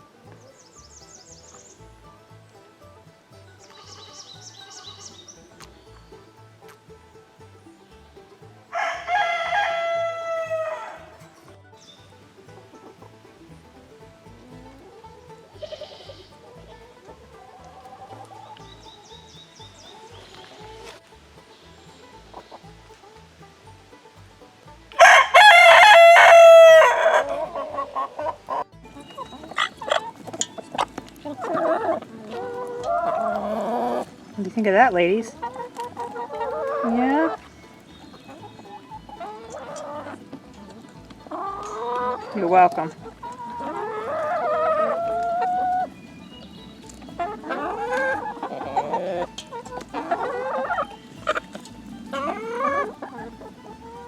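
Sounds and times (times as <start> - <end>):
chicken clucking: 0.0 - 54.0
rooster crowing: 8.7 - 11.2, 25.0 - 27.6.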